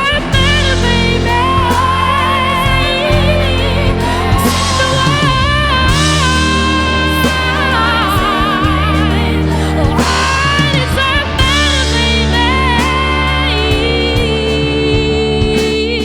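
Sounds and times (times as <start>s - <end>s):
bending lead guitar melody: 0.0s - 16.0s
drum hits: 0.0s - 16.0s
rock band playing live: 0.0s - 16.0s.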